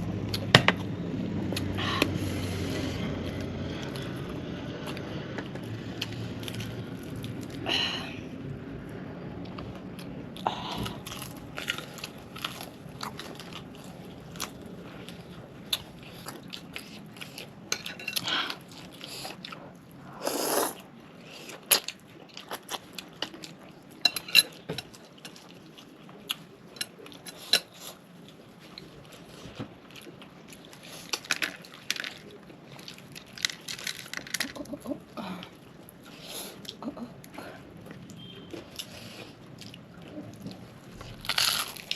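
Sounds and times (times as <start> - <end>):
crunching fried chicken: 10.9 - 37.3, 38.1 - 41.9.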